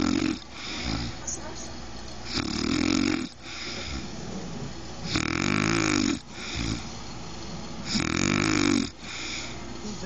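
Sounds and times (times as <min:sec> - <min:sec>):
woman snoring: 0:00.0 - 0:01.4, 0:02.2 - 0:04.2, 0:05.0 - 0:06.9, 0:07.8 - 0:10.0.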